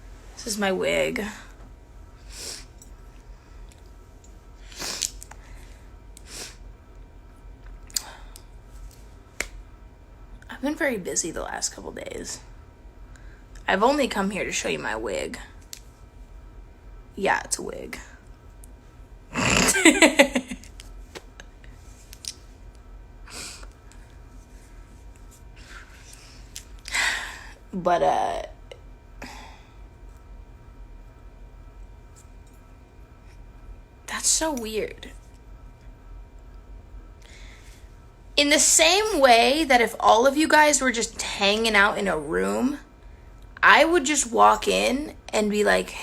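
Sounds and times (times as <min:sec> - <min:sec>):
pulsing woman's voice: 0:19.4 - 0:20.6.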